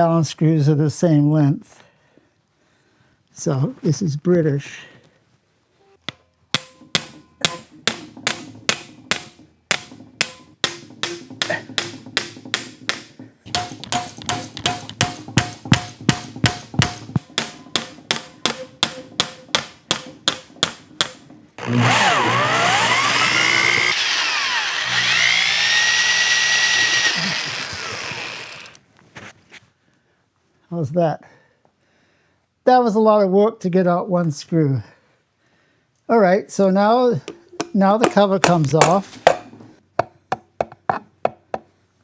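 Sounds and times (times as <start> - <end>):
loud whirring power tool: 21.6 - 28.8, 37.3 - 39.5
hammer blows on metal: 37.3 - 39.6.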